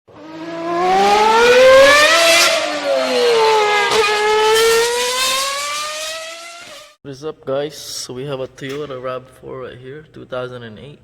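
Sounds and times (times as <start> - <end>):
car engine revving: 0.1 - 7.0.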